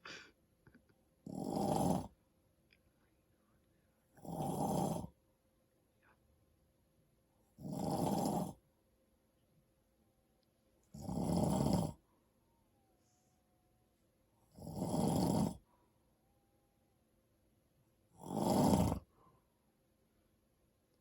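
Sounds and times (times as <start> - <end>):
man snoring: 1.2 - 2.2, 4.2 - 5.2, 7.6 - 8.6, 10.9 - 12.0, 14.5 - 15.6, 18.2 - 19.1.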